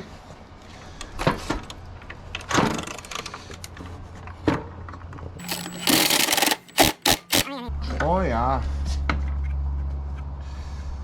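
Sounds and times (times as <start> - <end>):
quick clicks: 5.4 - 7.5.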